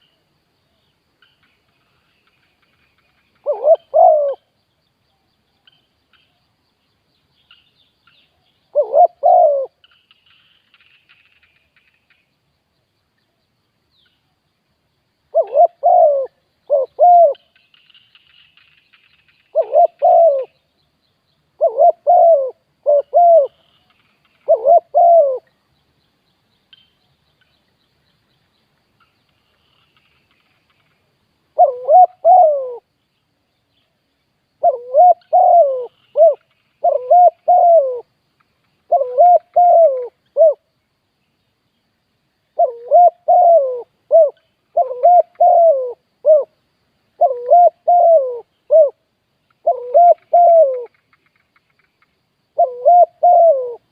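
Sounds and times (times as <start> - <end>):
dove cooing: 3.4 - 4.5, 8.7 - 9.8, 15.3 - 17.4, 19.5 - 20.6, 21.6 - 23.6, 24.4 - 25.5, 31.6 - 32.9, 34.6 - 38.1, 38.9 - 40.6, 42.6 - 46.5, 47.2 - 49.0, 49.6 - 51.0, 52.6 - 53.9.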